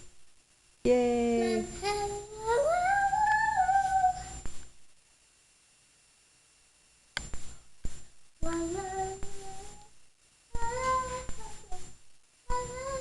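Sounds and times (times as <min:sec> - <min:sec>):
child humming and singing: 0:01.3 - 0:04.4, 0:08.4 - 0:09.9, 0:10.5 - 0:13.0.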